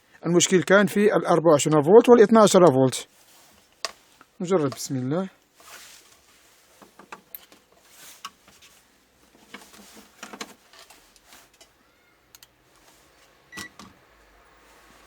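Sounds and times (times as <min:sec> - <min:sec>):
clicks and rustles of handling: 0:03.3 - 0:14.0.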